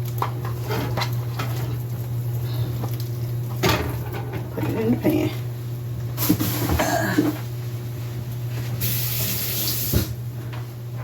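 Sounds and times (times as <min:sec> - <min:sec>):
tap running into sink: 0:09.1 - 0:10.2.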